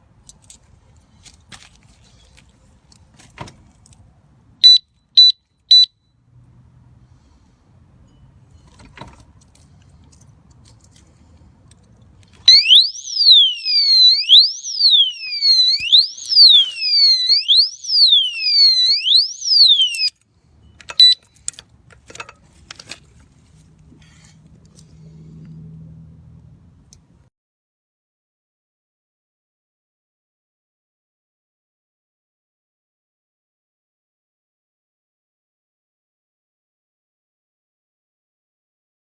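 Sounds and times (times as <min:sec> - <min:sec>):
electronic alarm siren sweeping: 0:12.5 - 0:20.1.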